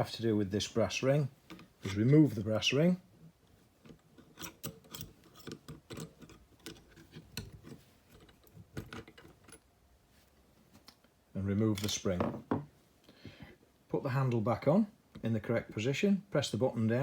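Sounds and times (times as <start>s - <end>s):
small metallic clicks: 3.8s - 9.6s.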